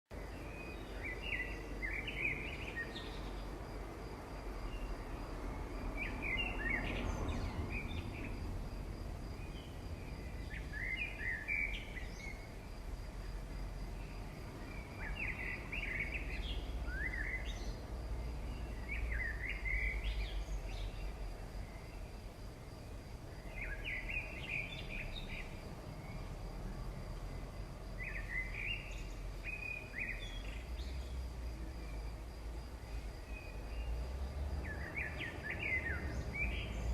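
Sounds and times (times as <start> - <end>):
bird chirping: 0.1 - 3.5, 5.9 - 8.4, 9.3 - 12.6, 14.0 - 22.1, 23.4 - 26.4, 27.3 - 31.2, 34.6 - 36.9
low background noise: 0.1 - 36.9.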